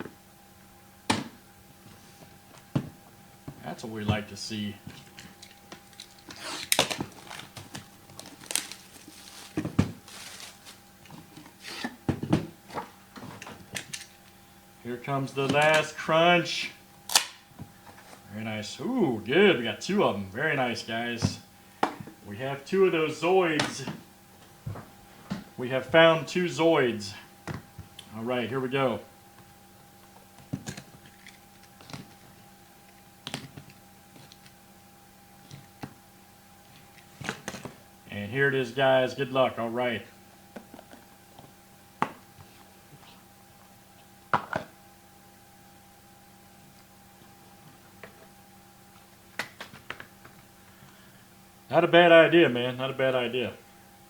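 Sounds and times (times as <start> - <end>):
faint steady hum: 0.0 - 54.0
wrapper crinkling and tearing: 5.8 - 10.9.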